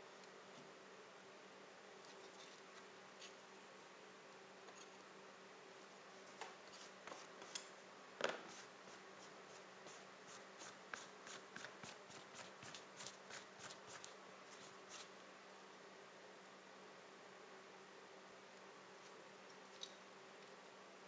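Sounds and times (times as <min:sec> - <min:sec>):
faint steady hum: 0:00.0 - 0:21.0.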